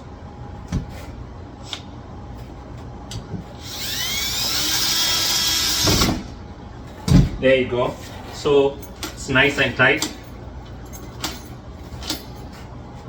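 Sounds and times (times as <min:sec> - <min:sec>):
cordless drill whining: 0:03.6 - 0:06.2.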